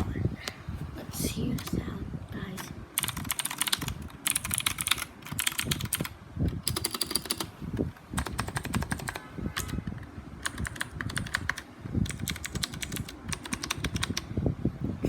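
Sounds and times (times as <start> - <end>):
mechanical keyboard typing: 1.5 - 1.8, 2.6 - 7.5, 8.2 - 14.3.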